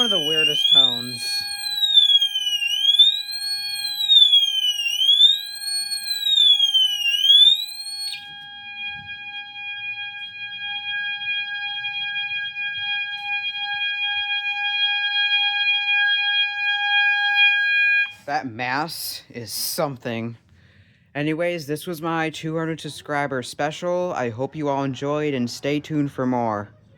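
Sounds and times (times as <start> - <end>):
alarm click: 0.0 - 8.2
fire alarm siren sweeping: 0.0 - 18.3
steady fire alarm horn: 0.0 - 18.3.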